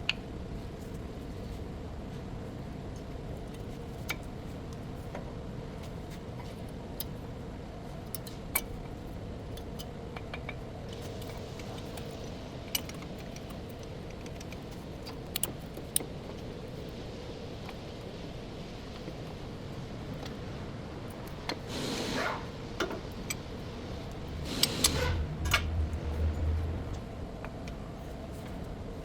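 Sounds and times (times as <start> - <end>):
low hum: 23.5 - 28.6.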